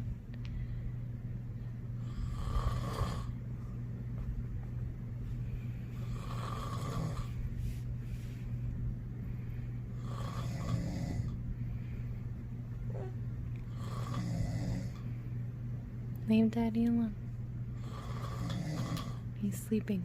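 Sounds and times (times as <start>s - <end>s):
low hum: 0.0s - 17.8s
man snoring loudly: 2.0s - 3.4s, 6.0s - 7.3s, 10.0s - 11.4s, 13.7s - 15.0s, 17.8s - 19.2s.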